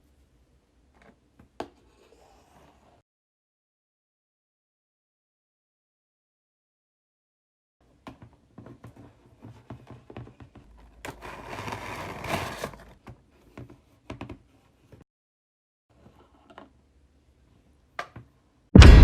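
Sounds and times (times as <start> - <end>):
rustling scrape: 11.1 - 13.0.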